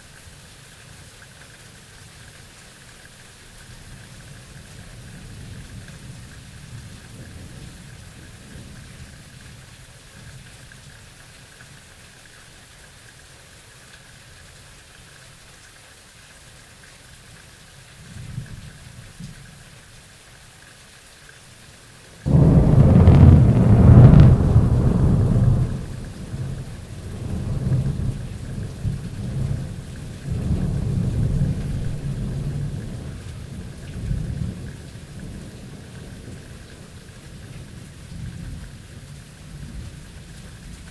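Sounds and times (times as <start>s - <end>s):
steady rain: 0.0s - 40.9s
loud thunderclap: 22.3s - 29.6s
thunder rumbling: 22.3s - 36.3s.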